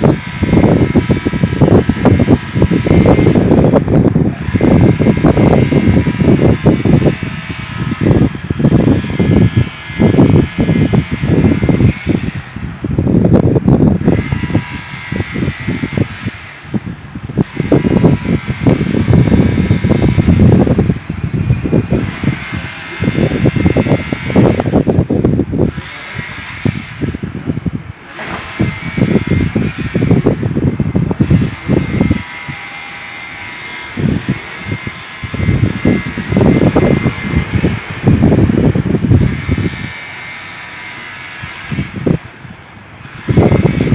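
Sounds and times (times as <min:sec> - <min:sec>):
demolition hammer chipping concrete: 0:00.0 - 0:12.9, 0:14.0 - 0:27.4, 0:28.0 - 0:42.4, 0:43.0 - 0:43.9
steady high whine: 0:27.9 - 0:42.2.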